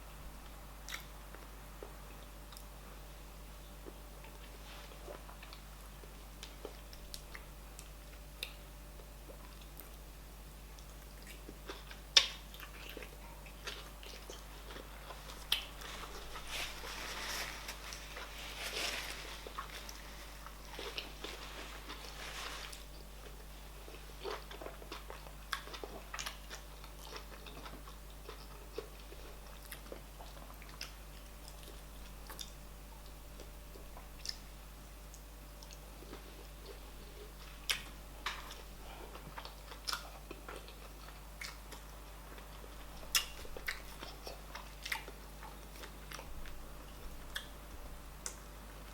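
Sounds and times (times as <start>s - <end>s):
chewing and mouth noises: 10.8s - 17.1s, 19.2s - 34.5s, 35.1s - 47.6s.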